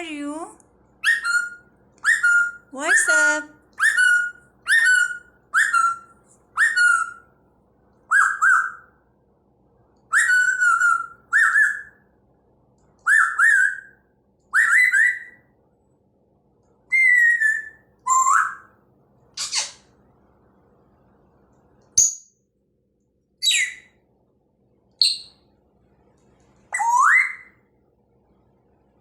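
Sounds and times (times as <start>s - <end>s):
parrot whistling: 1.0s - 3.1s, 3.8s - 7.3s, 8.1s - 8.9s, 10.1s - 12.0s, 13.0s - 15.4s, 16.9s - 18.7s, 23.4s - 23.9s, 26.8s - 27.6s.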